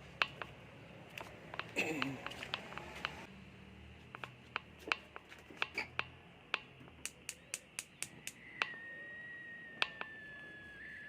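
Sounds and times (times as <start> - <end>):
high whistle-like tone: 8.1 - 11.0.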